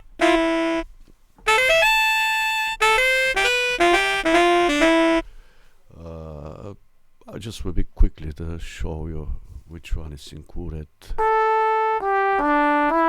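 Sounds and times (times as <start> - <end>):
sampled brass instrument melody: 0.0 - 5.3, 11.2 - 13.0.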